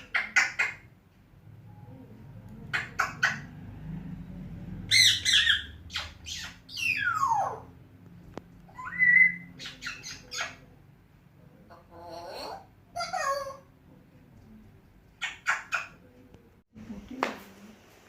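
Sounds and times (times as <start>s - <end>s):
parrot squawking: 0.0s - 0.9s, 2.7s - 3.6s, 4.9s - 7.8s, 8.7s - 10.7s, 11.7s - 13.7s, 15.2s - 16.0s
parrot whistling: 8.7s - 10.5s.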